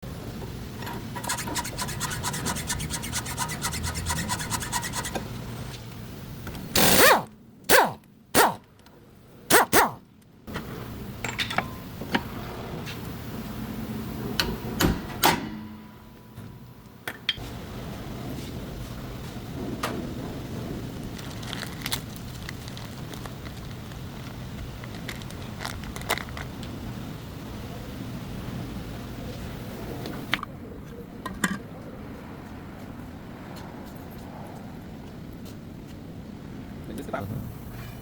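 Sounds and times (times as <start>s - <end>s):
rapid rubbing tick: 1.2s - 5.2s.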